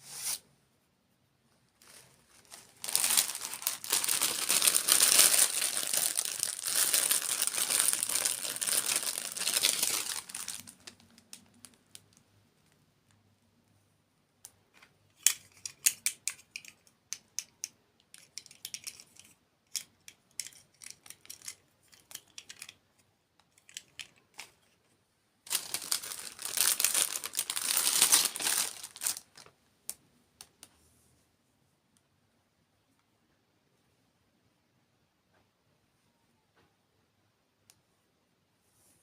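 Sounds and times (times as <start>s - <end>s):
crinkling and crackling: 1.7s - 13.2s, 18.1s - 30.8s.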